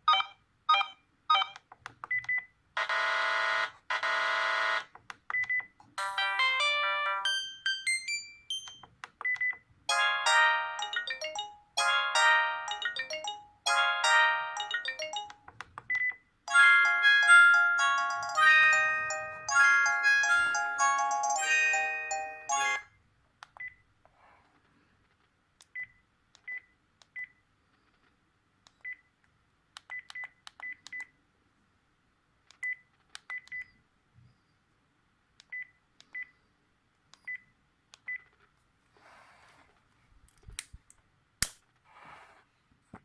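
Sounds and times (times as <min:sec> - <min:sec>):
keypad presses with beeps: 0:00.0 - 0:02.5, 0:04.9 - 0:05.8, 0:08.5 - 0:09.7, 0:14.6 - 0:16.2, 0:23.5 - 0:23.8, 0:25.7 - 0:27.4, 0:29.8 - 0:31.1, 0:32.5 - 0:33.8
mobile phone ringtone melody: 0:06.0 - 0:08.9, 0:09.9 - 0:15.4, 0:16.5 - 0:22.9.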